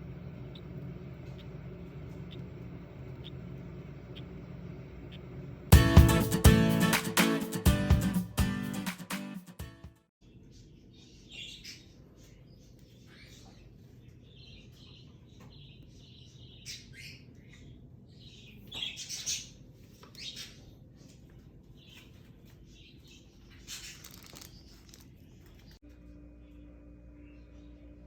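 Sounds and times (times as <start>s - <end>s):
lovebirds chirping: 0.0s - 5.4s
steady low hum: 0.0s - 6.9s, 25.8s - 28.0s.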